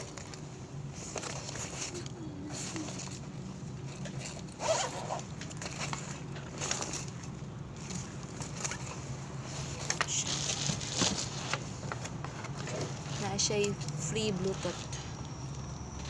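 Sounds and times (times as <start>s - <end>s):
zipper being pulled: 4.5s - 5.3s.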